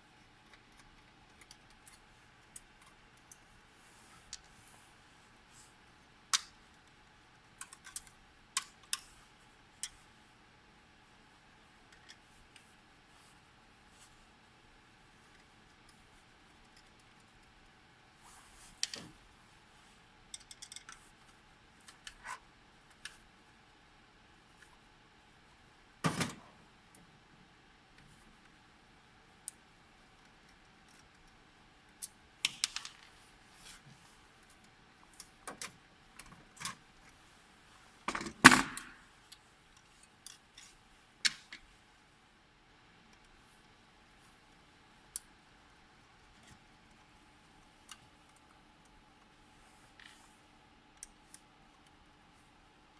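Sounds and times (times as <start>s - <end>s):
clicks and knocks of hard parts: 26.1s - 26.5s, 38.1s - 39.0s.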